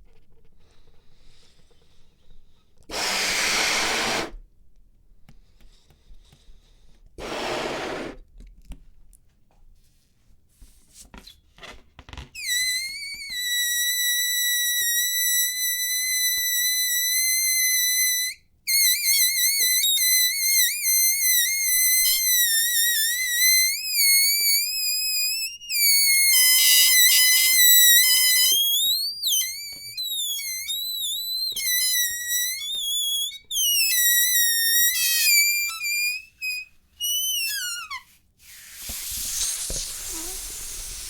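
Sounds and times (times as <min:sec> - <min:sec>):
air rushing in bursts: 0:02.9 - 0:04.4, 0:07.2 - 0:08.2, 0:38.5 - 0:41.0
deflating balloon squealing: 0:02.9 - 0:04.4, 0:07.2 - 0:08.2, 0:12.4 - 0:41.0.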